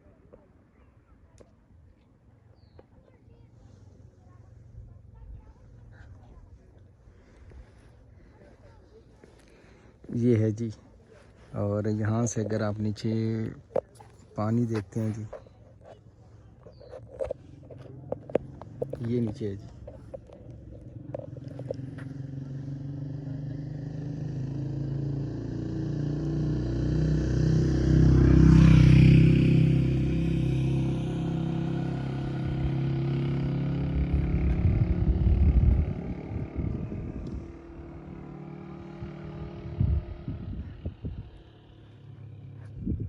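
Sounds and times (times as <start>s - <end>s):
vehicle engine passing by: 16.6s - 43.0s
low rumbling: 26.5s - 43.0s.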